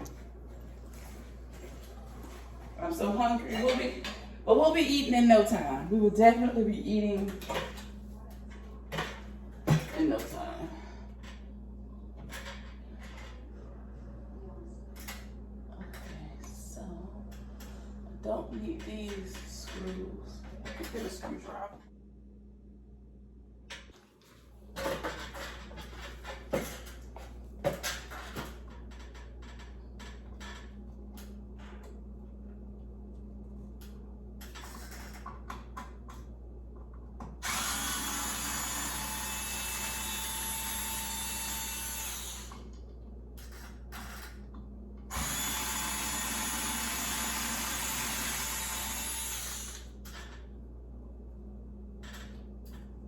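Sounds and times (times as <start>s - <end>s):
power drill running: 37.4s - 42.6s, 45.1s - 49.9s.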